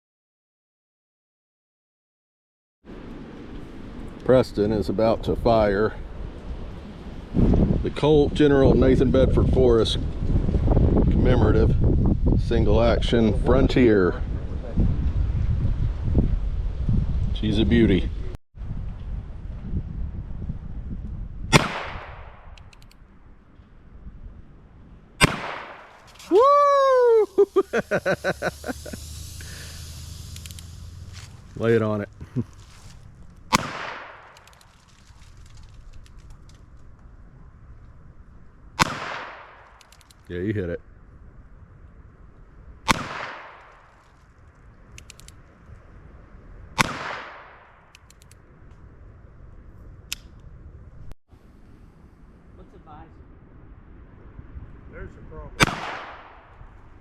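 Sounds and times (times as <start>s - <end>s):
wind rumbling on microphone: 2.9s - 57.0s
revolver gunshot: 21.5s - 22.6s, 25.2s - 26.0s, 33.5s - 34.4s, 38.8s - 39.8s, 42.8s - 43.8s, 46.8s - 47.9s, 55.6s - 56.6s
revolver hammer cocking clicks: 22.5s - 23.0s, 39.6s - 40.2s, 47.9s - 48.4s
revolver shot echoing: 25.2s - 25.9s, 33.5s - 34.3s, 55.6s - 56.4s.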